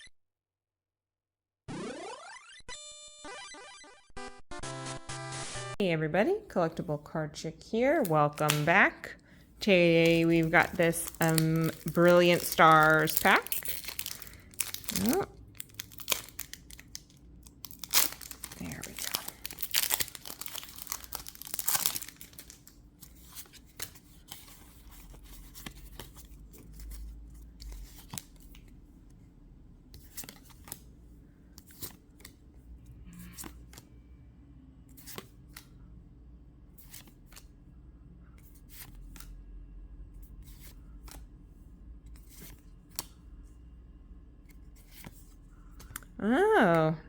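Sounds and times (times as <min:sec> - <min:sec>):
trading cards clicking and flicking: 0:08.0 - 0:08.8, 0:09.8 - 0:15.2
foil wrapper crinkling: 0:09.6 - 0:24.3.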